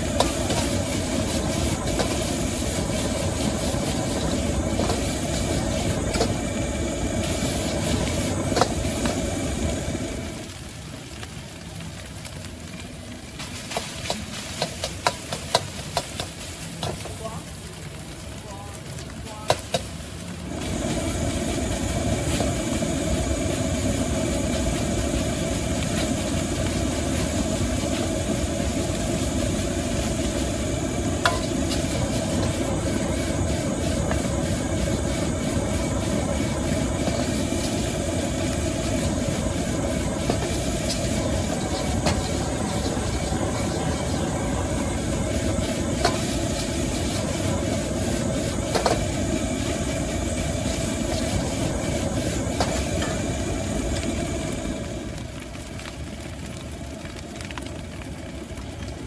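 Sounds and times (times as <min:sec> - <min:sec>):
gas burner roaring: 0:00.0 - 0:59.0.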